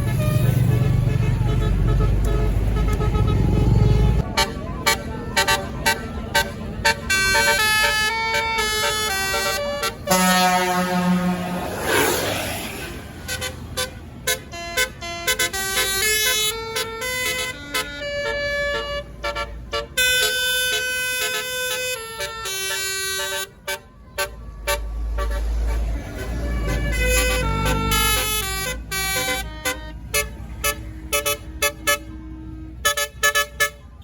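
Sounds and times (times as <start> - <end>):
multi-tone air horn melody: 0.0 - 12.2, 12.8 - 34.0
short rush of noise: 11.2 - 13.3.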